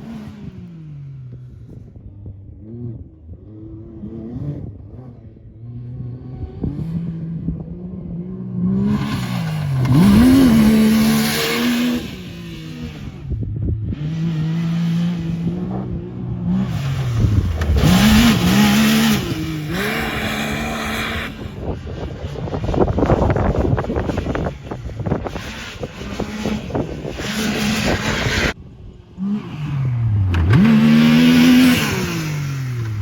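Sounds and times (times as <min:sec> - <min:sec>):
vehicle engine revving: 0:00.0 - 0:33.0
heavy rushing noise: 0:16.6 - 0:28.8.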